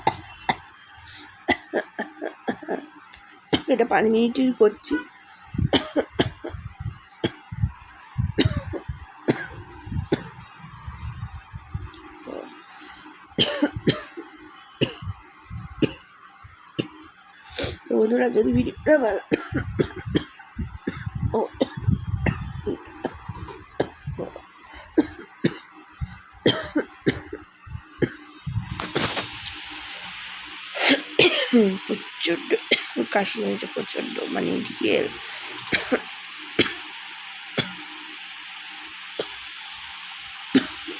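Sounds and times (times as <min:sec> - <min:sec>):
woman coughing: 0:01.5 - 0:02.9, 0:05.7 - 0:06.7, 0:08.4 - 0:10.3, 0:13.4 - 0:14.2, 0:19.2 - 0:20.3, 0:20.9 - 0:22.4, 0:25.0 - 0:25.6, 0:26.5 - 0:27.4, 0:30.8 - 0:31.8, 0:32.6 - 0:33.1, 0:35.7 - 0:36.8, 0:40.6 - 0:40.9
low muffled sounds: 0:03.6 - 0:36.1.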